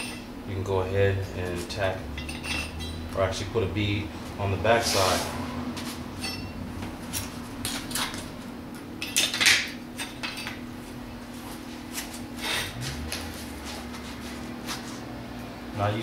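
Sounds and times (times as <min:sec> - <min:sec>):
low steady hum: 0:00.0 - 0:16.0
scrap steel clinking and scraping: 0:02.1 - 0:03.1, 0:06.2 - 0:08.2.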